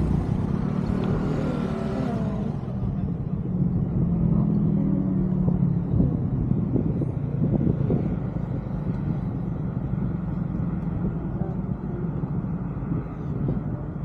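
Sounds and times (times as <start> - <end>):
road traffic: 0.0 - 14.0
scooter engine humming: 0.0 - 14.0.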